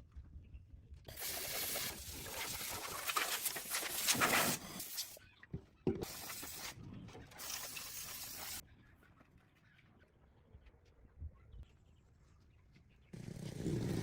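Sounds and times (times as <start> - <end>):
loud hissing bursts: 1.1 - 5.2, 6.0 - 6.7, 7.4 - 8.6.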